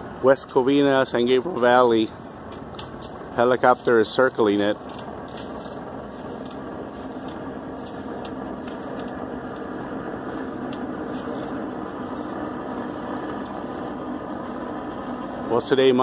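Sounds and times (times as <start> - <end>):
distant helicopter drone: 0.0 - 16.0.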